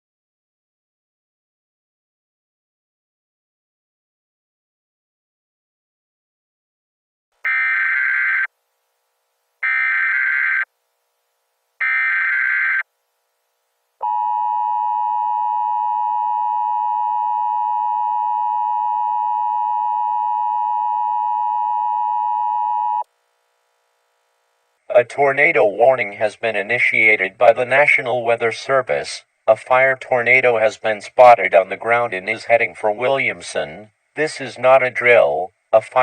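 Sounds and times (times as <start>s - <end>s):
two-tone attention signal: 14.0s - 23.0s.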